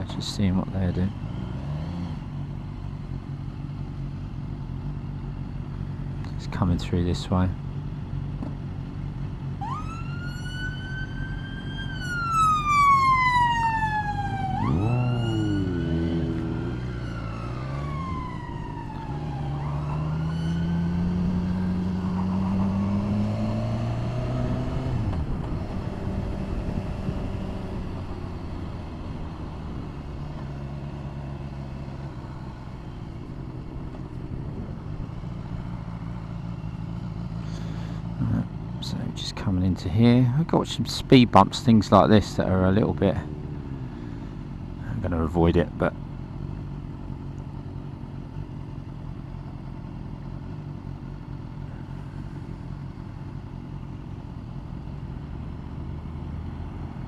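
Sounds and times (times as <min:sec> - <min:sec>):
motorcycle engine running: 0:01.1 - 0:06.7, 0:14.0 - 0:39.1
emergency siren wailing: 0:09.6 - 0:22.4.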